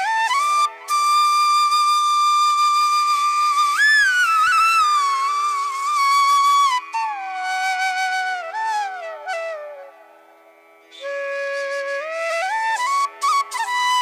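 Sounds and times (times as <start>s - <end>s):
flute-like melody: 0.0s - 14.0s.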